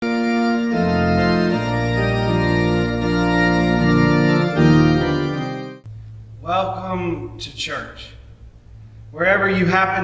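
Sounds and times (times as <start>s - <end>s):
organ playing sustained chords: 0.0s - 6.2s.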